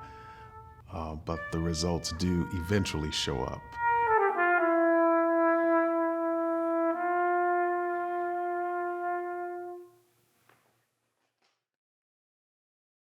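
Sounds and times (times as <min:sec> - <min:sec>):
brass instrument long held note: 0:00.0 - 0:10.0.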